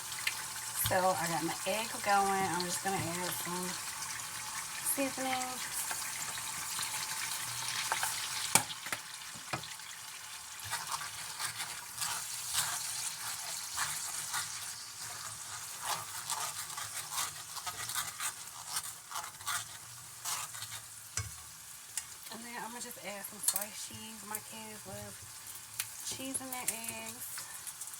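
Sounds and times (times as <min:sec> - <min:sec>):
eggs sizzling in a frying pan: 0:00.0 - 0:27.9
spatula scraping a pan: 0:00.3 - 0:08.7, 0:09.4 - 0:22.3.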